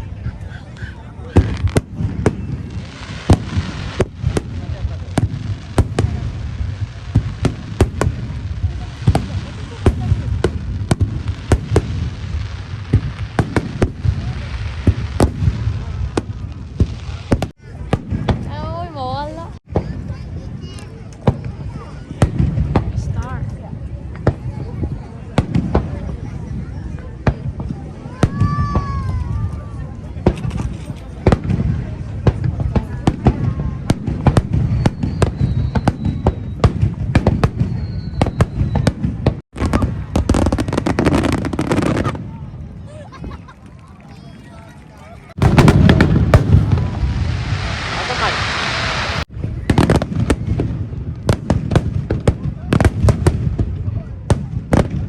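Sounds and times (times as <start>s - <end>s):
firework bangs and cracks: 1.2s - 55.0s
low rumble: 45.4s - 49.3s.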